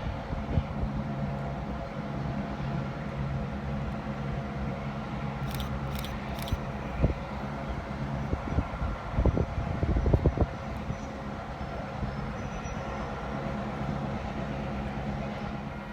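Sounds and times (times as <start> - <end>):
train mechanical hum: 0.0 - 15.9.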